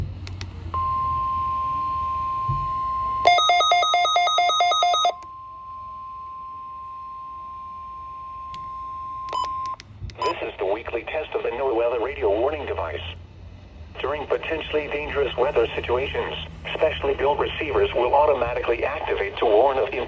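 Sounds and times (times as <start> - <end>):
steady alarm tone: 0.8 - 9.4
two-tone alarm: 0.8 - 10.4.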